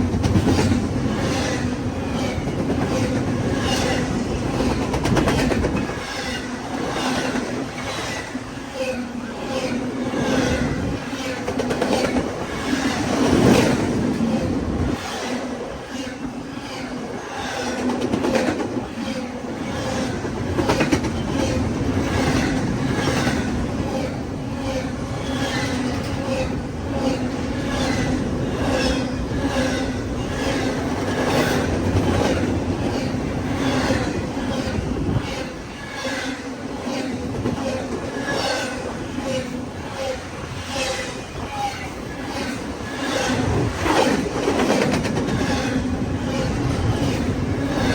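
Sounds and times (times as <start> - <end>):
train wheels clacking over rail joints: 0.0 - 8.1, 19.8 - 23.4, 41.6 - 47.9.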